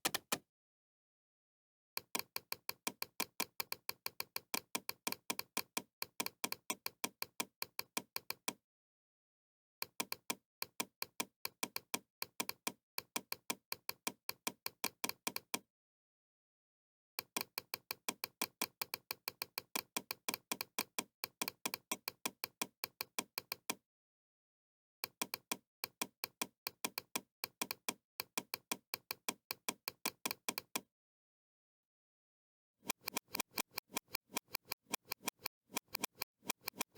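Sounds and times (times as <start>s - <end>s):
rapid mouse clicks: 0.0s - 0.4s, 26.2s - 30.8s, 32.8s - 36.9s.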